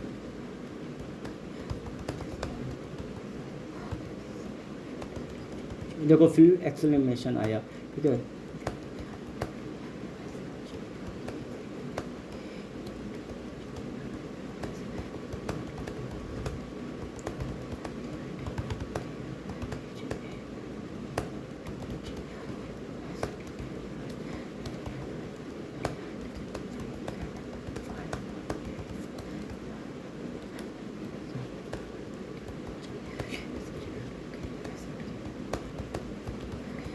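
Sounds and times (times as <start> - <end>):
low background noise: 0.0 - 36.9
typing on computer keyboard: 1.2 - 3.3.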